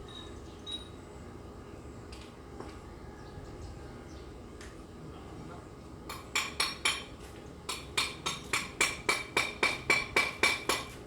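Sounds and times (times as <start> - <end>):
hammer striking metal: 6.1 - 7.1, 7.7 - 10.9.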